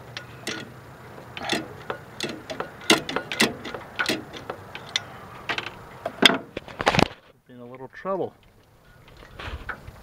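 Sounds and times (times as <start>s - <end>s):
light metal clicks and taps: 0.1s - 6.2s.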